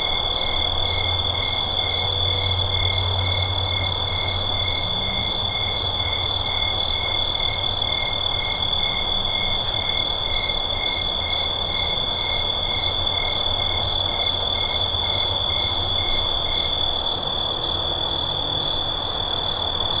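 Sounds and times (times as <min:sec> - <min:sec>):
crickets chirping: 0:00.0 - 0:20.0.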